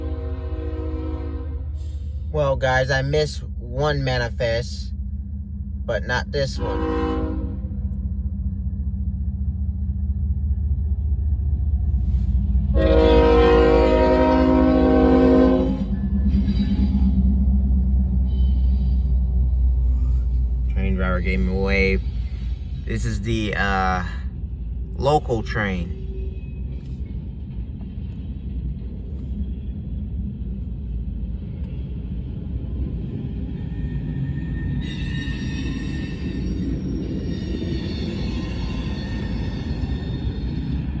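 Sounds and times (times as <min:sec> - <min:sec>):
locomotive air horn blast: 0:00.0 - 0:01.8, 0:06.6 - 0:07.7, 0:12.7 - 0:15.9
diesel locomotive rumbling: 0:00.0 - 0:41.0.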